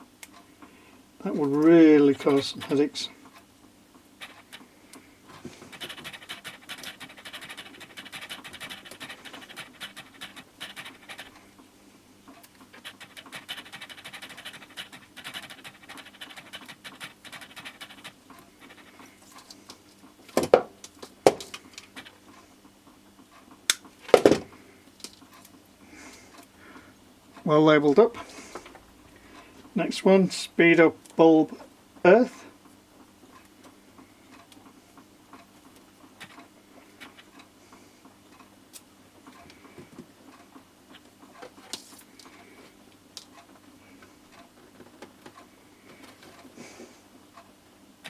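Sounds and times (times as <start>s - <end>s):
hands rustling wires: 4.2s - 11.4s.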